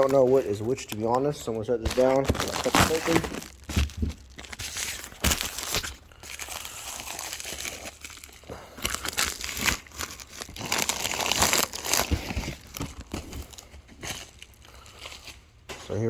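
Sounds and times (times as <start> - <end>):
package being cut and torn open: 0.0 - 14.5
packaging crinkling and tearing: 0.0 - 15.4.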